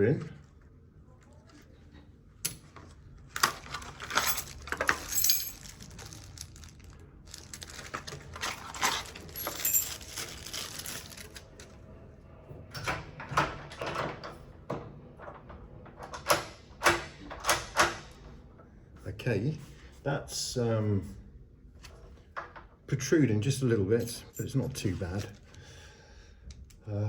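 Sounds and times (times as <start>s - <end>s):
keys jingling: 3.6s - 11.7s, 24.0s - 25.3s.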